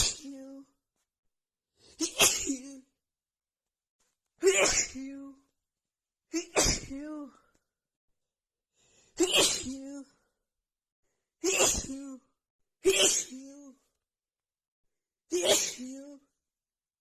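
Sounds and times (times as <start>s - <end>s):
woman sneezing: 0.0s - 0.5s, 2.0s - 2.8s, 4.4s - 5.1s, 6.4s - 7.2s, 9.2s - 10.0s, 11.4s - 12.2s, 12.8s - 13.6s, 15.3s - 16.2s.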